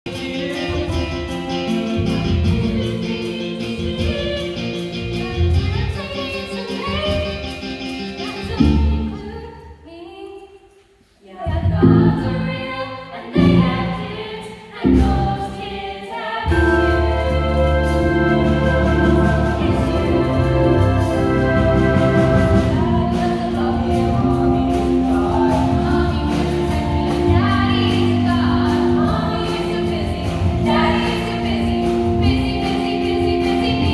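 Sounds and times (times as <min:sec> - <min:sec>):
band accompaniment: 0:00.1 - 0:09.1, 0:16.5 - 0:33.9
cast singing: 0:11.8 - 0:33.9.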